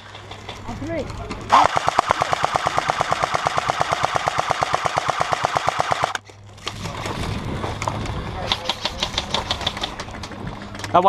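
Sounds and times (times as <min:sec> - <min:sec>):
airsoft gun full-auto burst: 0:01.5 - 0:06.2.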